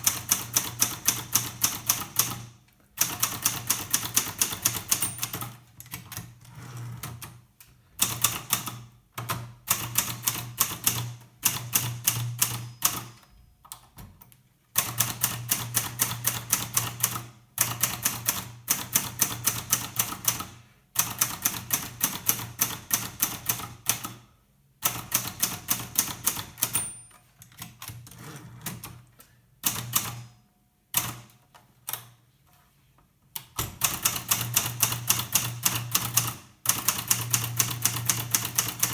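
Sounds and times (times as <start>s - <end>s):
manual typewriter key strikes: 3.1s - 6.0s.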